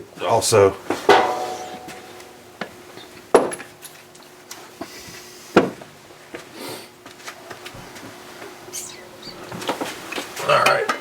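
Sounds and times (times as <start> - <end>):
faint steady hum: 0.0 - 11.0
hand tools clicking and clanking: 1.1 - 2.4.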